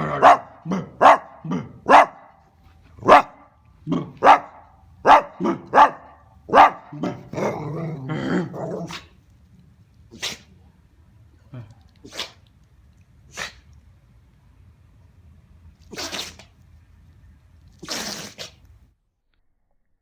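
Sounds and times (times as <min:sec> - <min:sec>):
dog grumbling: 0:00.0 - 0:01.9, 0:03.8 - 0:04.4, 0:06.9 - 0:09.0
dog barking sharply: 0:00.0 - 0:02.4, 0:03.0 - 0:07.3.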